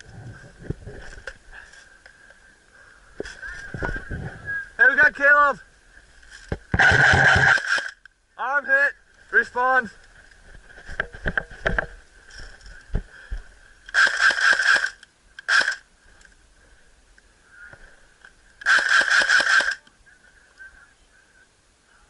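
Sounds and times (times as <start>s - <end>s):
airsoft gun firing bursts: 6.8s - 8.0s, 13.9s - 15.8s, 18.6s - 19.8s.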